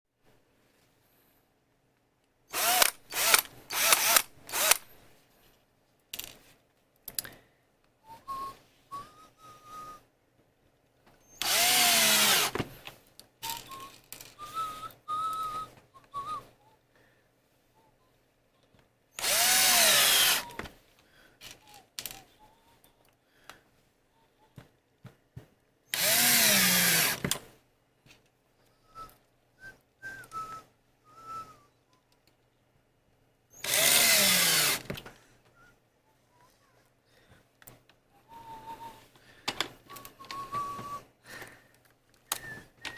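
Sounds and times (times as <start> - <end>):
electric drill driving screws: 2.5 - 4.8, 11.3 - 12.6, 19.2 - 20.6, 25.9 - 27.4, 33.5 - 35.0.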